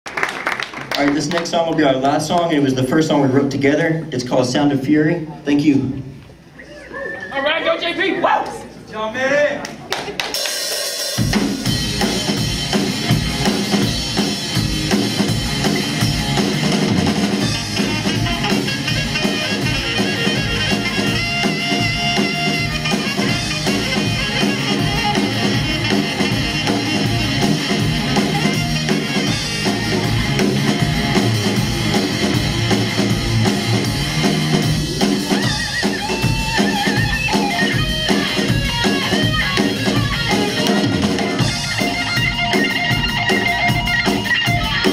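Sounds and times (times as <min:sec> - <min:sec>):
live rock band: 0:09.7 - 0:44.9
drum kit beat: 0:10.0 - 0:44.9
amplified guitars: 0:10.3 - 0:44.9.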